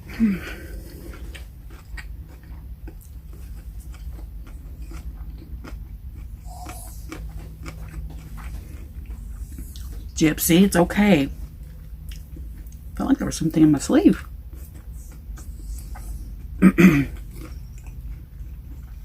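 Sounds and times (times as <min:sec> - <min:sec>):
chewing and biting sandwich: 0:00.5 - 0:10.1, 0:14.2 - 0:19.0
dog whining: 0:06.4 - 0:07.3.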